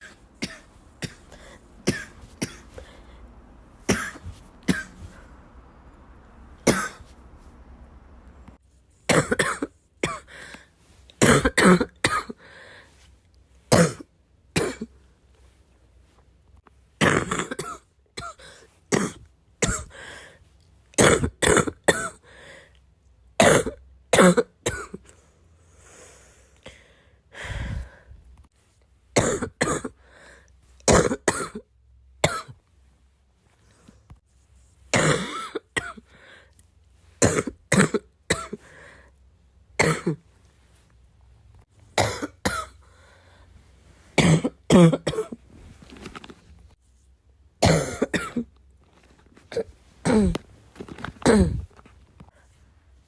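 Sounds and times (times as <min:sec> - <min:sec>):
person coughing: 0:00.0 - 0:03.0, 0:03.9 - 0:05.2, 0:06.6 - 0:07.1, 0:09.1 - 0:10.4, 0:11.2 - 0:12.5, 0:13.7 - 0:14.9, 0:17.0 - 0:20.0, 0:21.0 - 0:22.2, 0:23.4 - 0:25.1, 0:29.2 - 0:30.0, 0:30.9 - 0:31.6, 0:32.3 - 0:32.6, 0:35.0 - 0:36.1, 0:37.2 - 0:38.8, 0:39.8 - 0:40.2, 0:42.0 - 0:42.8, 0:44.2 - 0:45.4, 0:47.6 - 0:48.5, 0:49.5 - 0:51.8.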